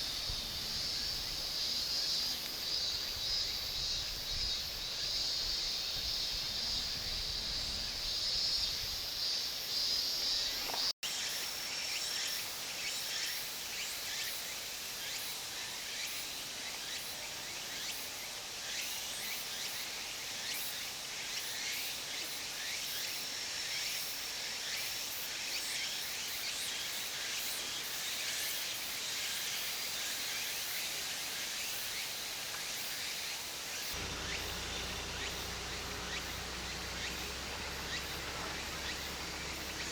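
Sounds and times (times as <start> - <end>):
insect chirps: 0.0 - 10.9, 31.9 - 39.9
insects buzzing: 0.0 - 10.9, 32.9 - 39.9
insect trill: 33.8 - 39.9.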